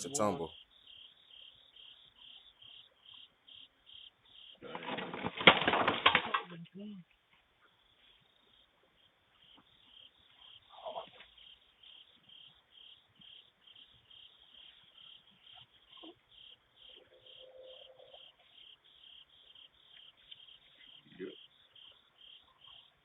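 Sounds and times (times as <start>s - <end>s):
faint crickets chirping: 0.0s - 23.0s.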